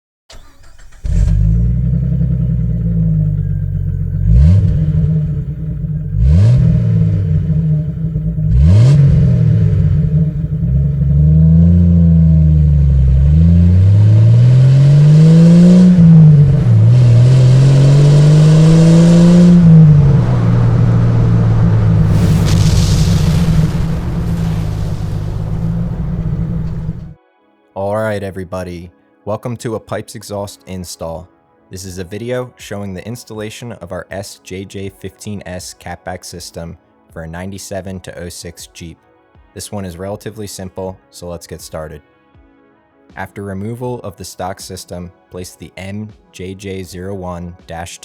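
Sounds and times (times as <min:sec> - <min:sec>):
car engine revving: 0:00.4 - 0:27.2.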